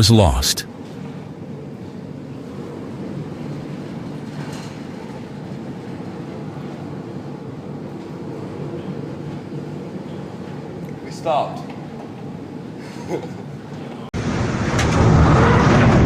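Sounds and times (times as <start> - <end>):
ship engines droning: 0.0 - 0.6.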